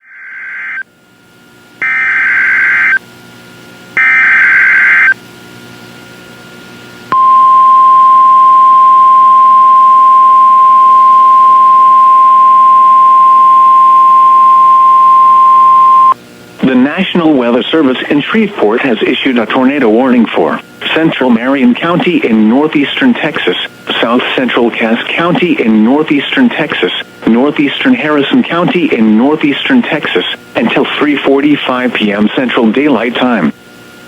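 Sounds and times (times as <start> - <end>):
buzzing data bursts: 1.8 - 3.0, 4.0 - 5.2.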